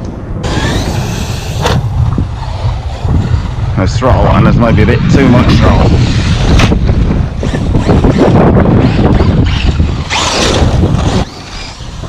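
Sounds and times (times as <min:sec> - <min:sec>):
wind buffeting microphone: 0:00.0 - 0:12.0
rc truck motor at full throttle: 0:00.4 - 0:03.0, 0:05.7 - 0:12.0.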